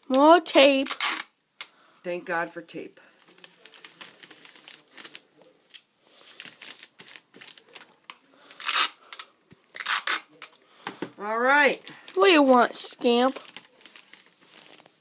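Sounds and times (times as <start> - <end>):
adhesive tape ripping: 0.8 - 1.7, 8.6 - 10.5
wrapping paper crinkling: 3.2 - 10.5, 11.8 - 15.0.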